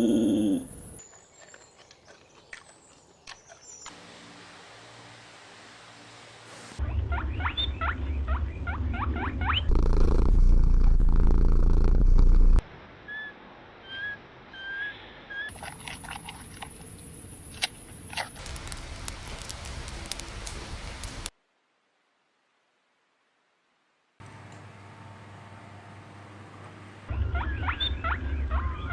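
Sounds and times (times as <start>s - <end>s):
low animal rumble: 0.0s - 1.0s, 9.5s - 12.6s, 15.5s - 21.3s
scattered clicks: 17.5s - 21.3s.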